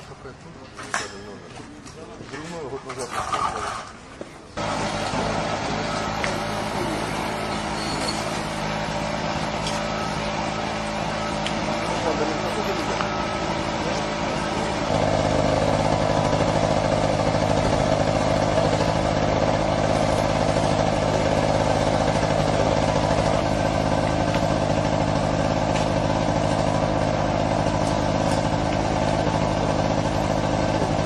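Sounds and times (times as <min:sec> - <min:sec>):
vehicle engine droning: 0:04.6 - 0:31.0.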